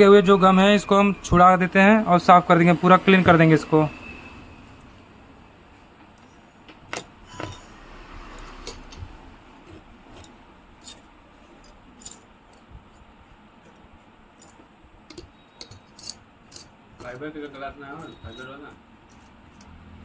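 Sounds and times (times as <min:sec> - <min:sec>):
metal tools clicking and scraping: 0:06.2 - 0:19.8.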